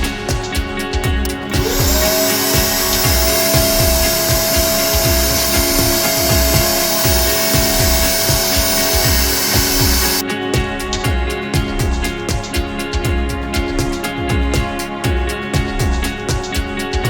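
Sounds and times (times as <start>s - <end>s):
music with regular beat: 0.0s - 17.0s
vacuum cleaner running: 1.2s - 10.2s.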